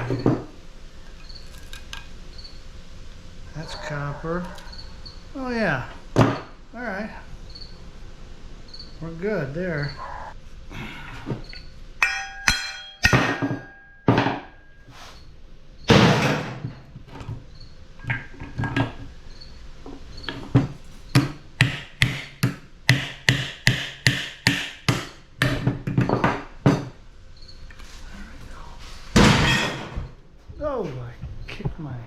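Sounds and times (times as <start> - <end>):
hammer striking metal: 12.0 - 14.8, 21.1 - 27.0, 29.2 - 30.1.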